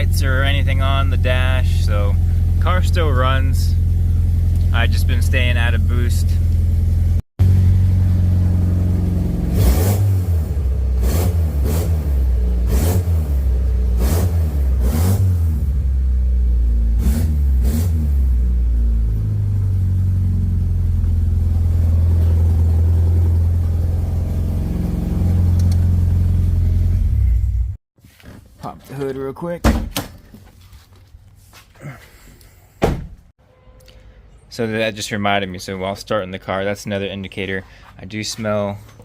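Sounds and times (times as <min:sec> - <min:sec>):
car engine idling: 0:00.0 - 0:27.8
engine revving with sharp rattle: 0:01.8 - 0:27.8.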